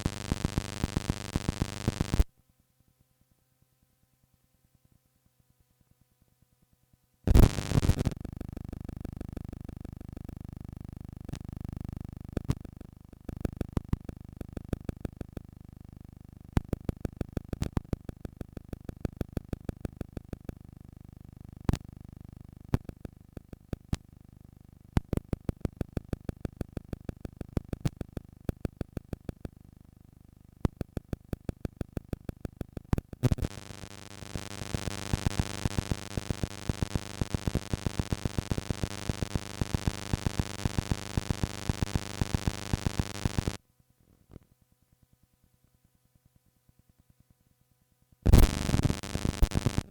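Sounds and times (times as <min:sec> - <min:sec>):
loud buzzing tone: 0:00.0 - 0:02.3, 0:07.3 - 0:08.2, 0:33.2 - 0:43.6, 0:48.3 - 0:49.9
tape hiss and hum: 0:00.0 - 0:49.9.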